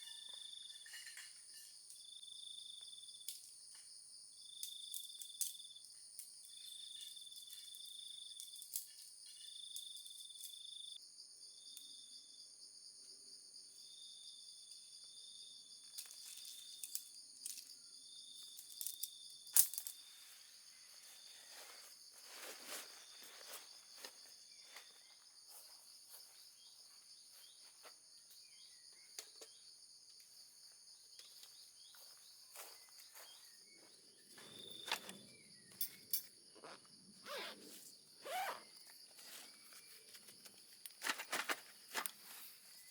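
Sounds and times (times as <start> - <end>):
insect chirping trill: 0.0 - 42.9
rustling: 19.9 - 24.2.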